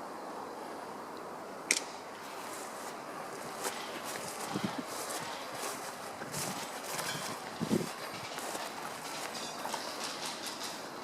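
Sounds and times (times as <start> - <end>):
steady background hiss: 0.0 - 11.0
footsteps walking: 2.2 - 11.0.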